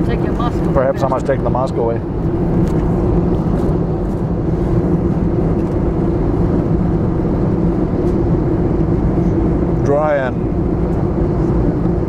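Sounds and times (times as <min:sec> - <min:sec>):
airflow rush in aircraft cabin: 0:00.0 - 0:12.0
low engine drone: 0:00.0 - 0:12.0.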